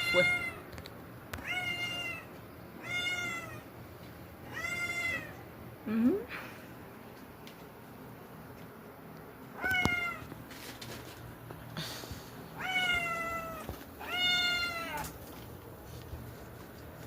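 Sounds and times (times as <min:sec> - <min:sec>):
cat meowing: 0:00.0 - 0:00.6, 0:01.4 - 0:03.6, 0:04.5 - 0:05.4, 0:09.6 - 0:10.3, 0:12.6 - 0:15.2.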